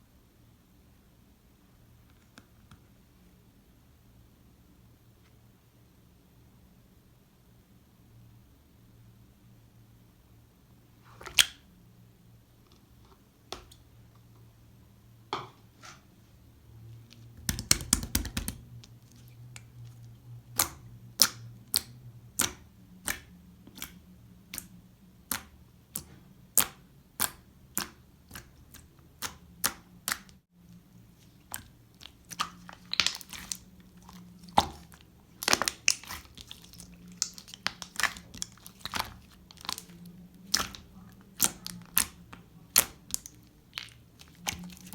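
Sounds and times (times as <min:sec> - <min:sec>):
slime popping and clicking: 0:17.4 - 0:18.6, 0:31.4 - 0:39.9, 0:40.5 - 0:44.9.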